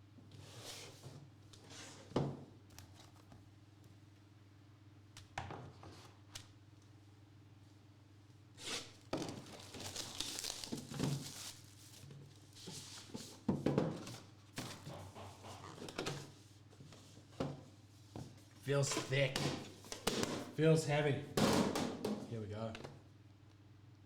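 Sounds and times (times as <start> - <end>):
faint electrical hum: 0.0 - 24.0
wrapping crinkling and tearing: 8.6 - 12.6.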